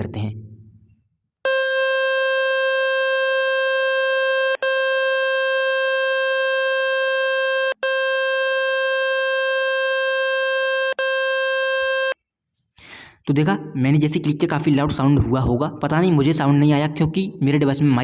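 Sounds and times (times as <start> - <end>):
buzzy electronic tone: 1.5 - 12.2.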